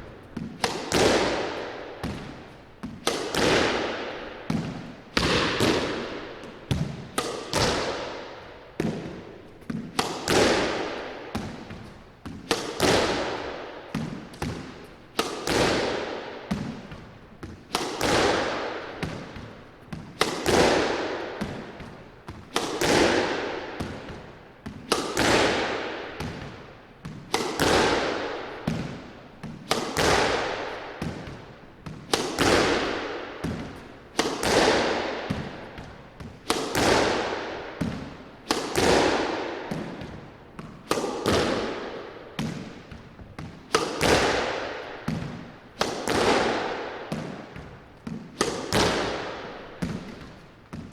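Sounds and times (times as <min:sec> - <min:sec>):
squash ball cracking off racket: 0:00.0 - 0:50.9.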